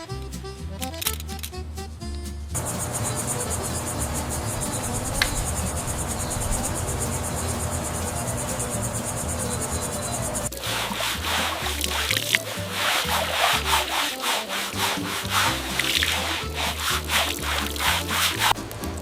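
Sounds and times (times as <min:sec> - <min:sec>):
crickets chirping: 0:02.6 - 0:13.8
steady hiss: 0:02.6 - 0:18.9.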